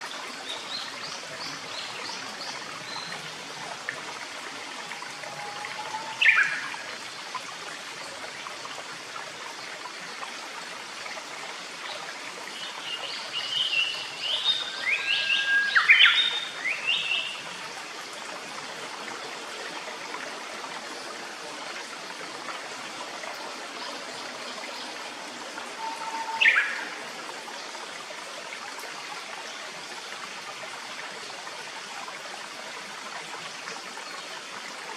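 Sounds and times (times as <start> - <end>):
forest stream running: 0.0 - 34.9
bird calling: 25.8 - 26.9.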